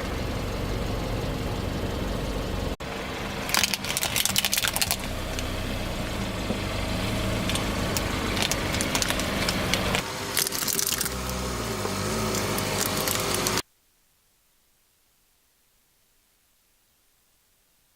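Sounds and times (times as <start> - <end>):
car engine running slowly: 0.0 - 13.6
tyre crushing objects crackling: 6.6 - 13.6.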